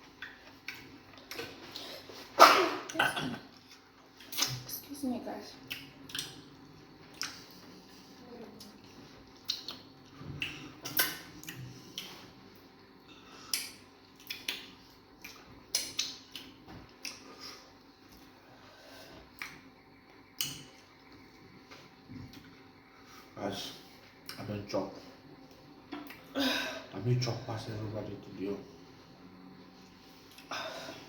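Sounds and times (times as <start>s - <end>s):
eating clicks and smacks: 0.2s - 2.0s, 2.9s - 4.7s, 5.6s - 7.6s, 9.4s - 12.2s, 13.5s - 17.4s, 19.4s - 19.7s, 20.3s - 20.9s.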